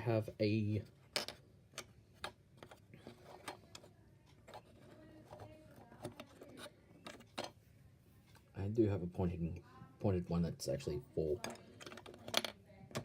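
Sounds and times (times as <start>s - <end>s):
small hard parts clicking and tapping: 1.1s - 7.6s, 11.3s - 13.0s.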